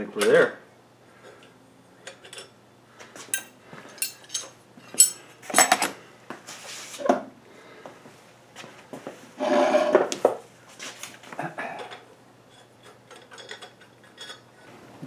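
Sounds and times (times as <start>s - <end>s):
steel parts clinking and clanking: 3.3s - 5.8s.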